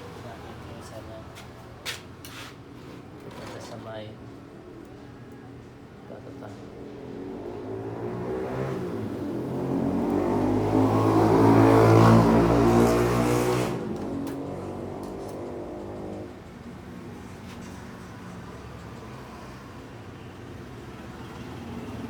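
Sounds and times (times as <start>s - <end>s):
vehicle engine passing by: 6.6s - 16.5s.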